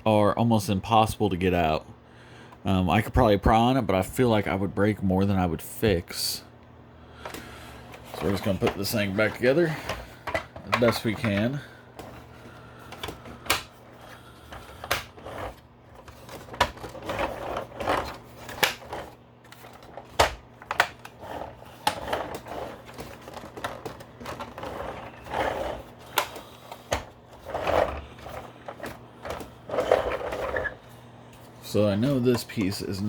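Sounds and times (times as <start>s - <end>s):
plastic scraping and rattling: 7.3s - 31.0s.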